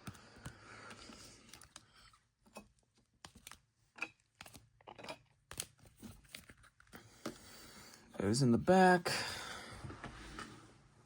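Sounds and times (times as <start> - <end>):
trading cards clicking and tapping: 3.2 - 3.6, 4.2 - 4.7.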